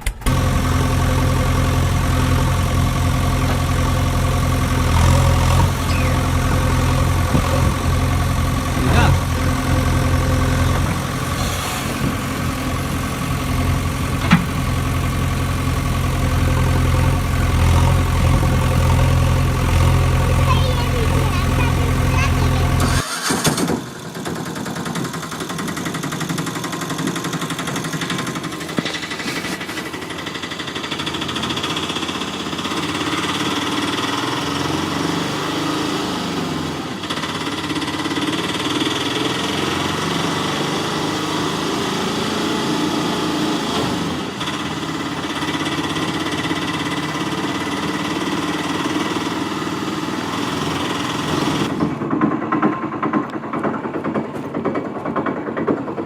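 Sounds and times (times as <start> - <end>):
toy motor and gearbox whining: 5.8 - 6.3, 22.4 - 23.6.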